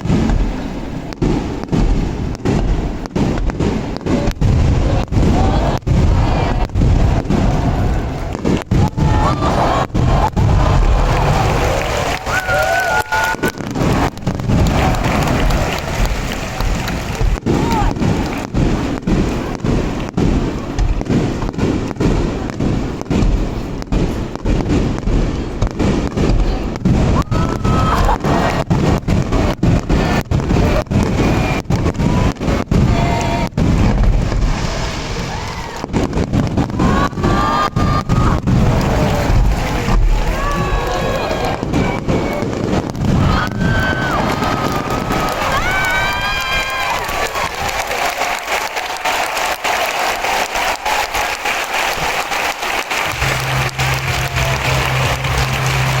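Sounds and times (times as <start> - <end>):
fireworks booming: 0.0 - 56.0
fireworks whistling: 0.0 - 56.0
crowd applauding and cheering: 5.4 - 18.9, 27.0 - 30.8, 36.6 - 42.4, 43.0 - 56.0.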